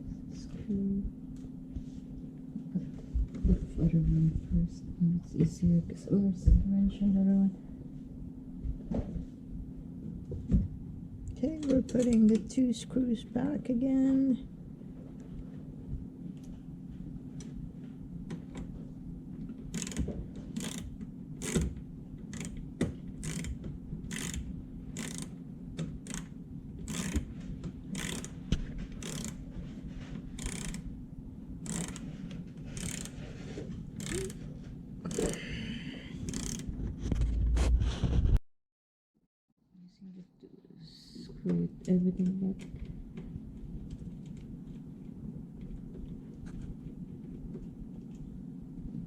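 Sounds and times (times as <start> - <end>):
hand ratchet clicking: 19.7 - 27.3, 27.9 - 28.4, 29.0 - 29.4, 30.3 - 30.9, 31.6 - 33.3, 34.0 - 34.4, 35.1 - 35.6, 36.2 - 36.7.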